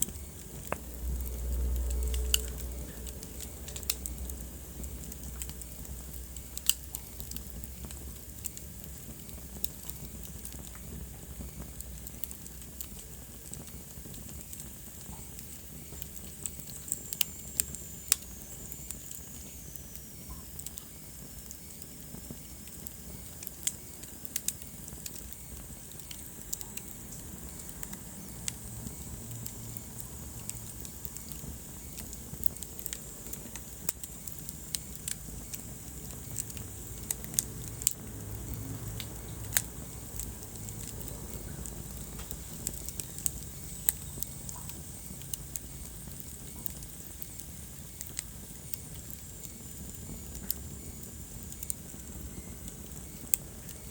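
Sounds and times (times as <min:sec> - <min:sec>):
low rumble of flames: 0:00.0 - 0:53.9
wood fire crackling and popping: 0:00.0 - 0:53.9.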